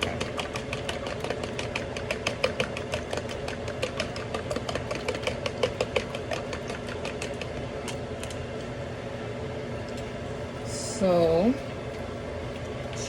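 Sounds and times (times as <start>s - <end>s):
utensil clicking against bowl: 0.0s - 8.4s.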